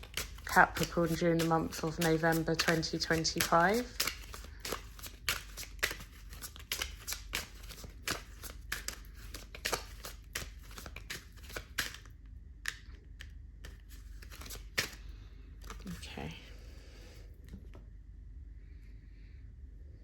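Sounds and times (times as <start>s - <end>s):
cards being shuffled: 0.0s - 16.0s.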